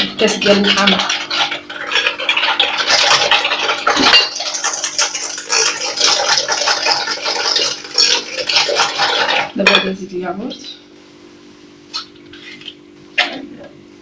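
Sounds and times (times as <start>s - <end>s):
utensil scraping and clinking bowl: 0.2s - 9.9s.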